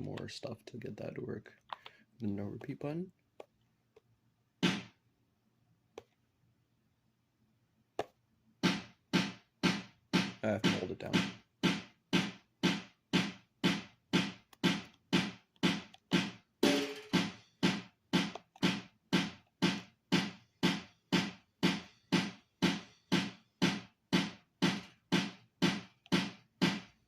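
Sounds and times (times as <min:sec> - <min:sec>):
electronic drum hits: 0:04.6 - 0:04.9, 0:08.6 - 0:27.0.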